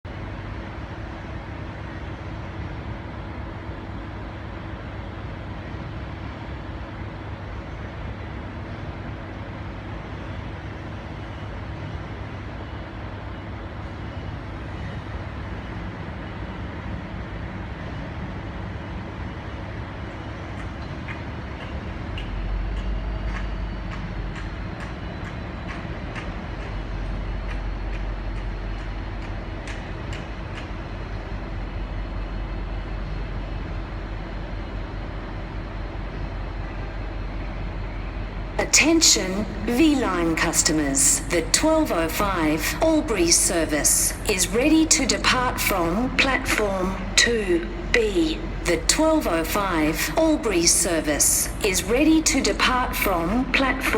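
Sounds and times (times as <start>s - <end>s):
diesel locomotive idling: 21.4s - 53.9s.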